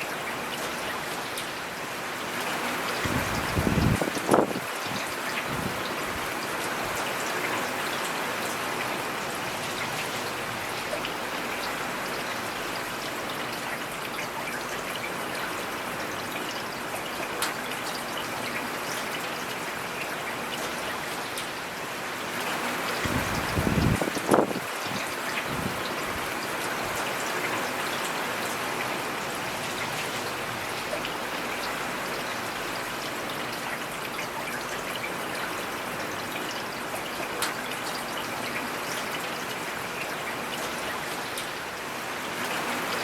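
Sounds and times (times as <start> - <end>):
steady rain: 0.0 - 43.0.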